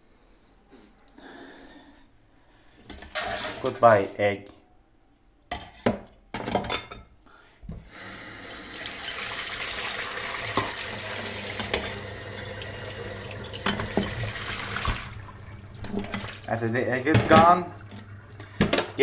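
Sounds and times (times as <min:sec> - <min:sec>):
tap water running into sink: 0:02.9 - 0:03.8, 0:07.8 - 0:19.0.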